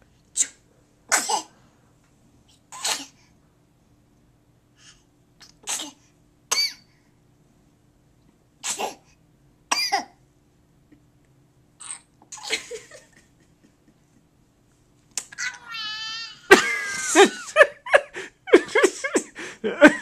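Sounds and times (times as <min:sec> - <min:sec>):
sneeze-like bursts: 0:00.4 - 0:01.6, 0:02.7 - 0:03.3, 0:05.4 - 0:06.8, 0:08.6 - 0:09.1.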